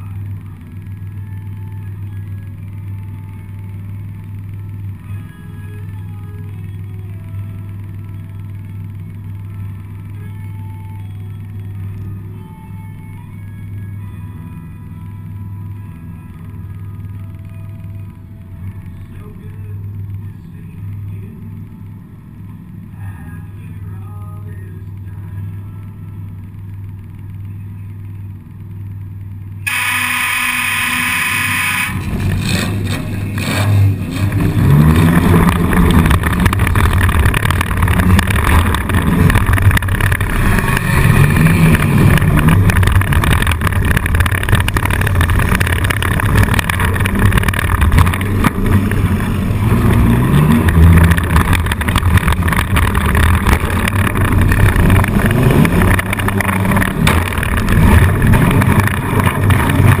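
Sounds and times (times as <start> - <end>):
car engine revving: 28.6 - 60.0.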